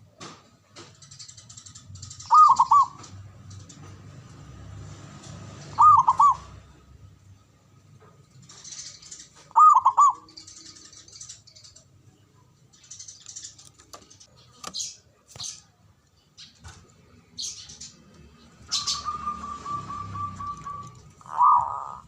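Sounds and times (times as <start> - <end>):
small birds chirping: 0.7 - 22.0
dove cooing: 2.2 - 3.2, 5.6 - 6.8, 9.5 - 11.0, 18.6 - 22.0.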